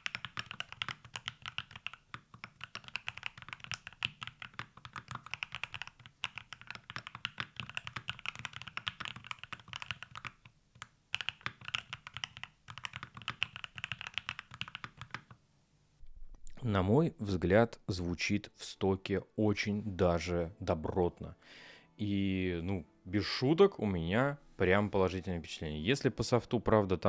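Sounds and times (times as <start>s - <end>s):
keyboard typing clacks: 0.0s - 15.4s.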